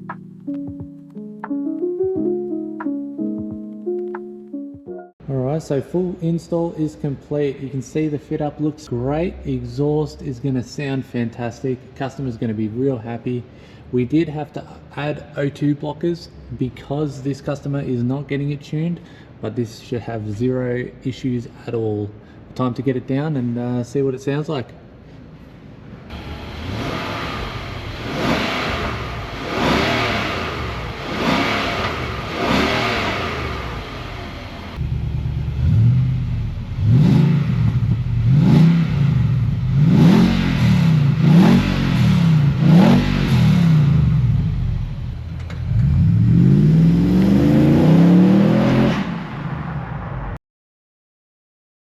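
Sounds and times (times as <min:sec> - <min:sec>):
engine revving: 0:26.1 - 0:49.4.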